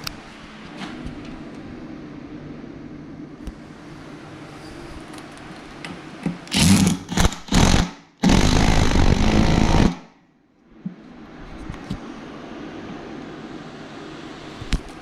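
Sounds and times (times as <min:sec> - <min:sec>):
power drill running: 0:06.5 - 0:10.0.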